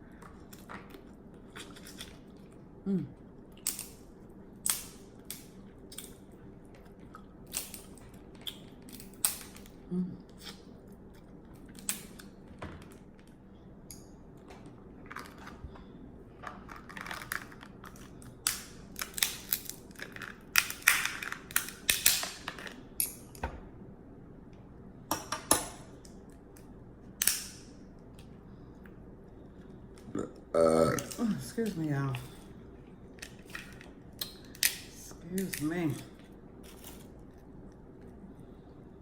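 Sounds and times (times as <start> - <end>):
crab shell cracking: 3.6 - 9.8, 26.1 - 28.3.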